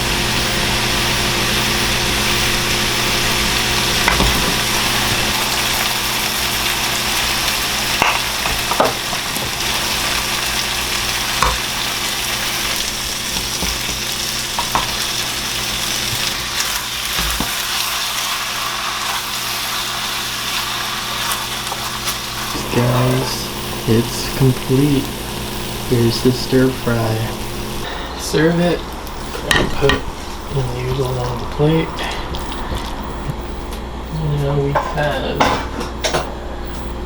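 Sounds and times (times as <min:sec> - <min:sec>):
food sizzling in a hot pan: 0:00.0 - 0:27.9.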